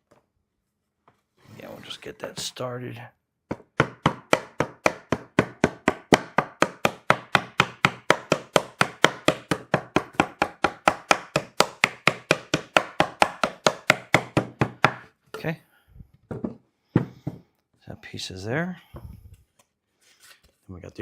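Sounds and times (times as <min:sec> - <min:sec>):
rapid tapping on wooden boards: 0:03.5 - 0:15.1.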